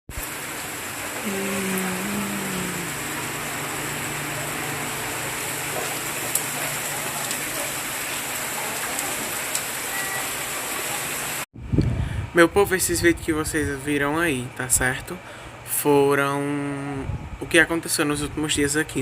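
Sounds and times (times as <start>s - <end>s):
heavy rain falling: 0.1s - 11.4s.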